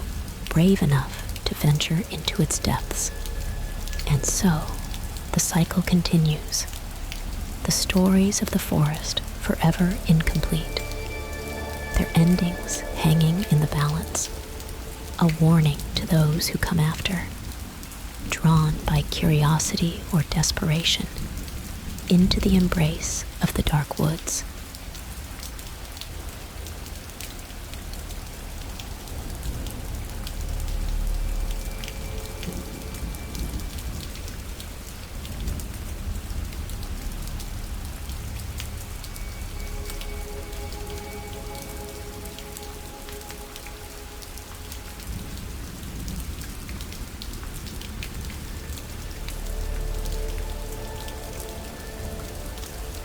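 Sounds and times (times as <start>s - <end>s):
faint held music notes: 0.0s - 17.2s
low rumbles: 0.0s - 19.1s
rain drops ticking: 0.0s - 53.0s.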